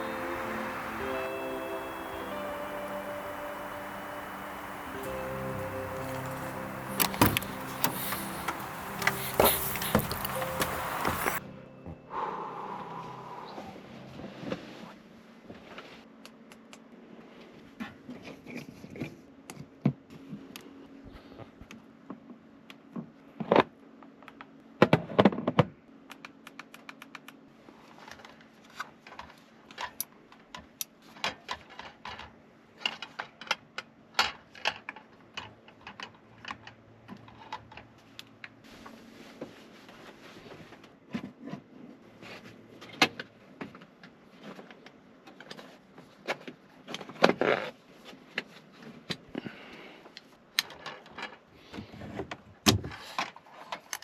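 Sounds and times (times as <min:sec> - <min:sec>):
faint steady hum: 0:00.0 - 0:17.5.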